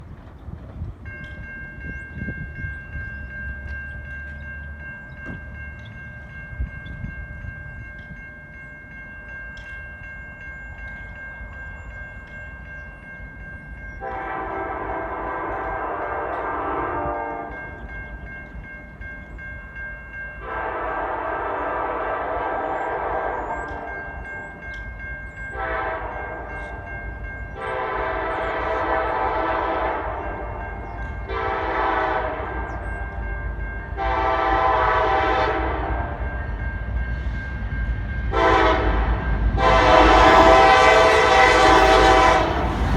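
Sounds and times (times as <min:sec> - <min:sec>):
locomotive air horn blasts: 0:14.0 - 0:17.6, 0:20.4 - 0:23.9, 0:25.6 - 0:26.4, 0:27.6 - 0:30.6, 0:31.3 - 0:32.8, 0:34.0 - 0:36.2, 0:38.3 - 0:42.9.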